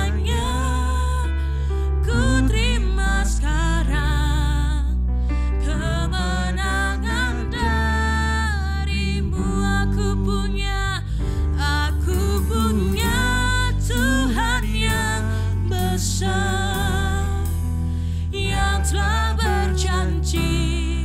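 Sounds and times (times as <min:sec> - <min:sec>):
live gospel band playing: 0:00.0 - 0:01.3, 0:11.6 - 0:21.0
person singing with vibrato: 0:00.0 - 0:04.9, 0:05.6 - 0:21.0.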